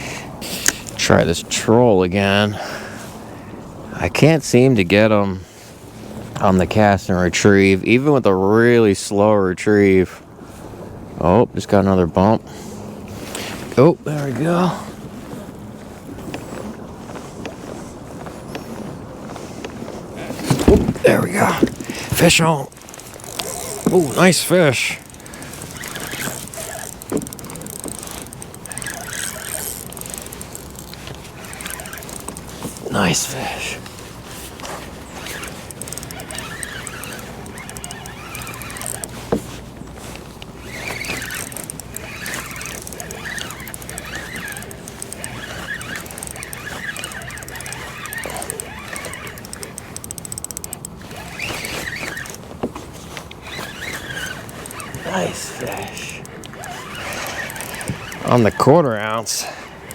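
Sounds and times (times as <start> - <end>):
water: 0.0 - 59.9
wind: 0.0 - 59.9
fishing reel clicking: 21.6 - 39.4, 40.4 - 52.4, 53.4 - 59.9.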